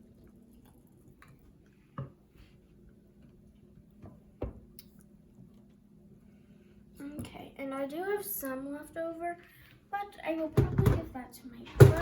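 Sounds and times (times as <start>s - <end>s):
faint steady hum: 0.0s - 12.0s
kitchenware knocks and clicks: 10.6s - 12.0s.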